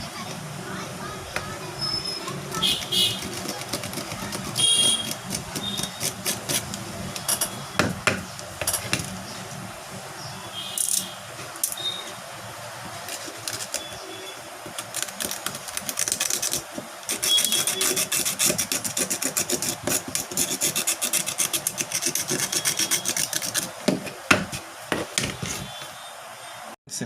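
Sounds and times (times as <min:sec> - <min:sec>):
hand tools clicking and scraping: 0:02.3 - 0:09.2, 0:13.0 - 0:14.0, 0:14.6 - 0:25.7.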